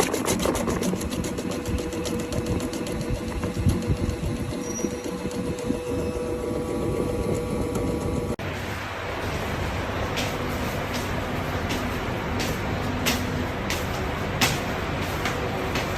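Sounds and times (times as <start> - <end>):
electric dicing machine motor hum: 0.0 - 10.0.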